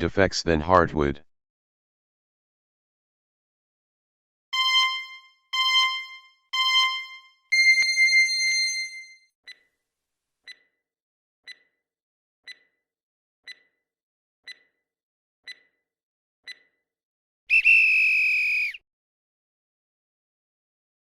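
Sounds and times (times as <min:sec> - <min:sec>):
loud buzzer tone: 0:04.6 - 0:09.0
countdown timer ticks: 0:04.6 - 0:09.6, 0:11.5 - 0:11.7, 0:12.5 - 0:12.7, 0:13.5 - 0:13.8, 0:14.5 - 0:14.8, 0:15.5 - 0:15.7.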